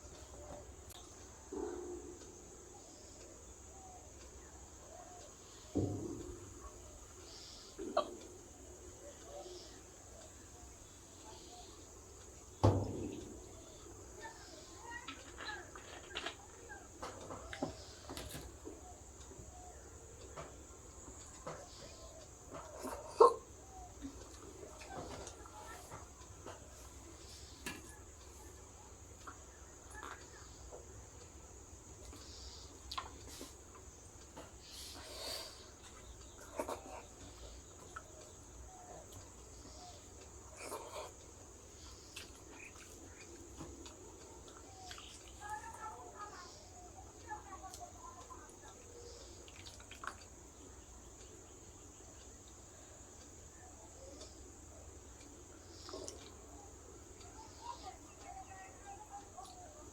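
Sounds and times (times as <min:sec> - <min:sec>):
faint hiss: 0:00.0 - 0:59.9
soft chewing: 0:03.1 - 0:59.9
chewing and mouth clicks: 0:42.1 - 0:45.4, 0:49.4 - 0:50.4.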